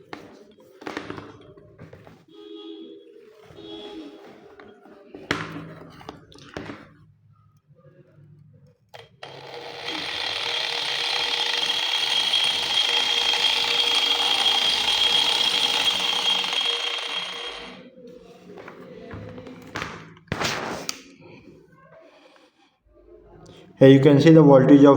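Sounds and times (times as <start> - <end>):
angle grinder whining: 9.0 - 17.8.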